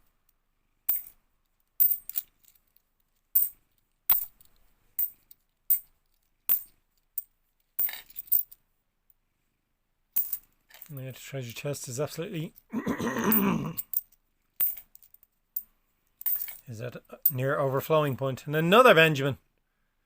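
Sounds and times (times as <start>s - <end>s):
coins clinking: 0.9s - 1.2s, 1.8s - 2.5s, 3.4s - 5.9s, 6.5s - 8.6s, 10.2s - 11.0s, 13.3s - 17.4s.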